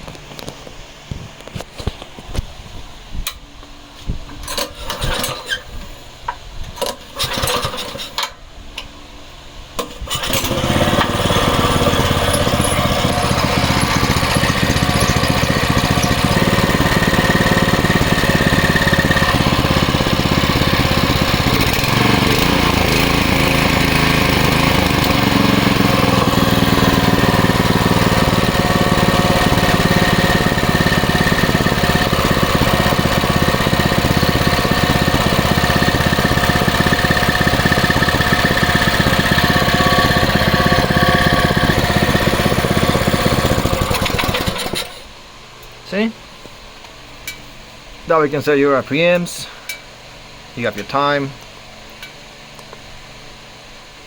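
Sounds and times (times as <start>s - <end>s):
pull-start engine starting and running: 4.3s - 6.0s, 6.7s - 8.9s, 9.8s - 45.1s.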